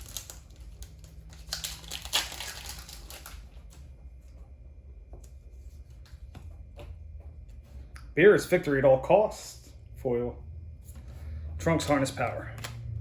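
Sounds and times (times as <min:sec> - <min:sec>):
foil wrapper crinkling and tearing: 0:00.0 - 0:03.8.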